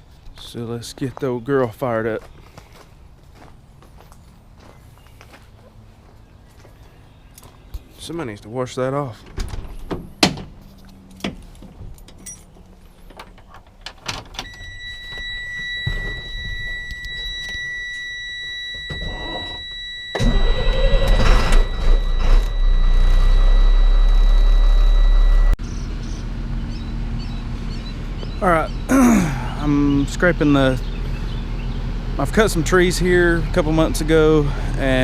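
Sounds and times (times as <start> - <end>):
high warning tone: 14.4 - 25.6
engine cranking and running: 20.2 - 25.6.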